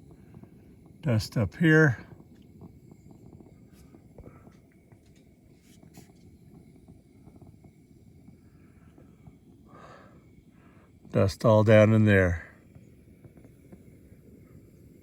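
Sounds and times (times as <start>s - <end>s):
low steady rumble: 0.0s - 15.0s
small clicks and rustles: 3.4s - 6.4s.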